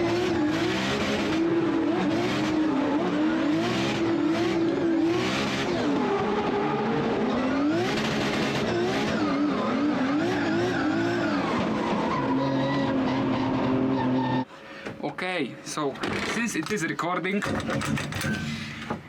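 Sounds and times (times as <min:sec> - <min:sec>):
car engine revving hard: 0:00.0 - 0:14.4.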